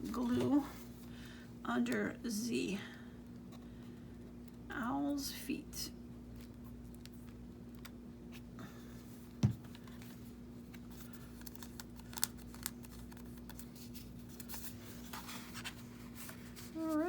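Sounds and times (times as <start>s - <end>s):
steady low hum: 0.0s - 17.0s
hands handling paper: 9.4s - 17.0s.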